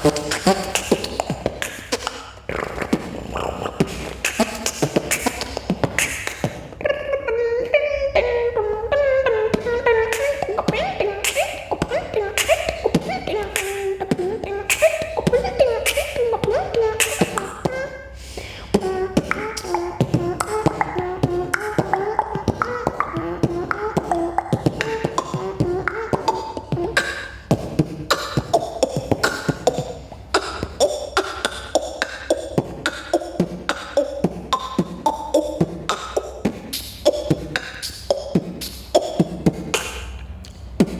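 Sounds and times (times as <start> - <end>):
boy beatboxing: 0.0 - 40.9.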